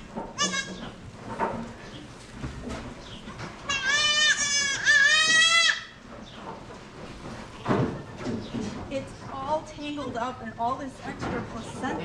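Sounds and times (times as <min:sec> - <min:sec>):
goat bleating: 0:00.4 - 0:01.0, 0:03.6 - 0:06.0.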